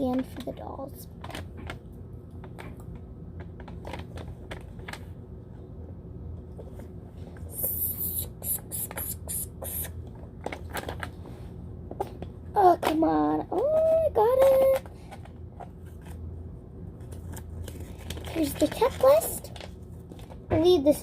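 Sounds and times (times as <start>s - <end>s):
plastic packaging crinkling: 17.0s - 20.4s.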